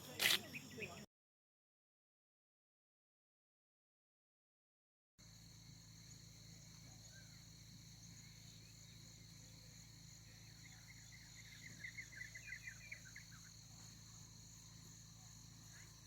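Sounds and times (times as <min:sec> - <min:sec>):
insects trilling: 0:00.0 - 0:01.1, 0:05.2 - 0:16.0
low steady hum: 0:05.2 - 0:16.0.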